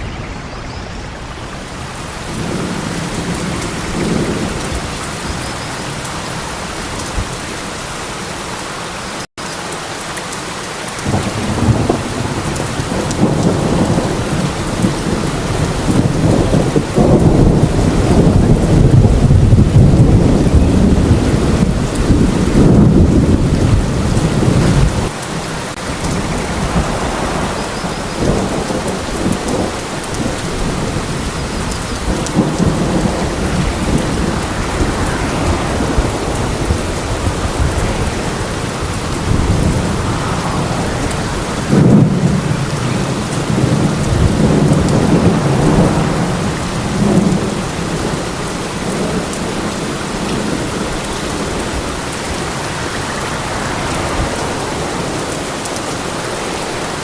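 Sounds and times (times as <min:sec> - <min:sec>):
rolling thunder: 0:00.0 - 0:07.5, 0:11.0 - 0:25.2, 0:25.8 - 0:57.0
heavy rain: 0:00.0 - 0:57.0.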